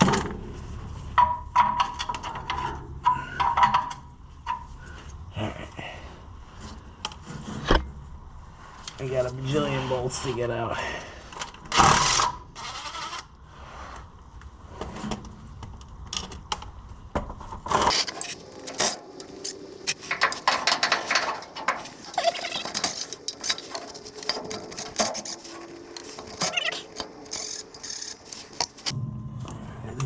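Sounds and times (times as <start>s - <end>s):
wrench clicking: 17.9s - 28.9s.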